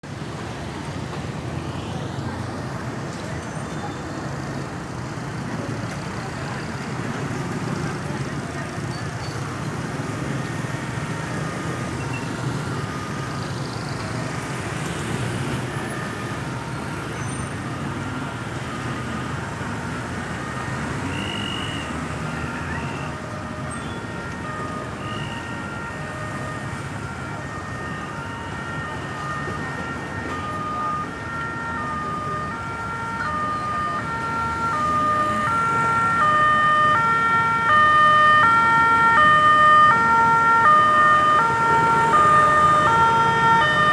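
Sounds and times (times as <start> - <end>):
road traffic rumble: 0.0 - 43.9
ambulance siren hi-lo: 9.4 - 43.9.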